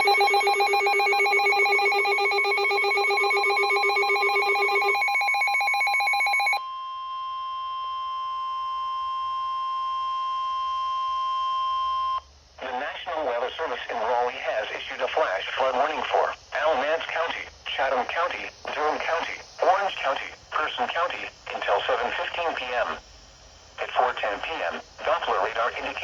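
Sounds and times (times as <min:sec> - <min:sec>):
rapidly pulsing alarm: 0:00.0 - 0:06.6
steady warning tone: 0:00.0 - 0:06.6.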